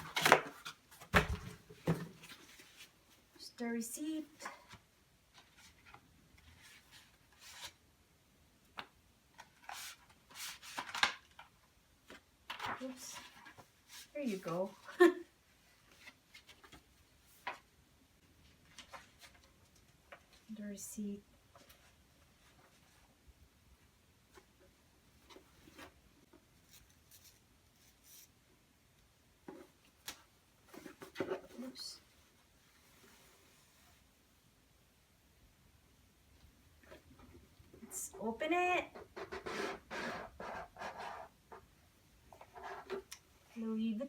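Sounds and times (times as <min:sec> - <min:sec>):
paper and packaging rustling: 0:09.4 - 0:15.2.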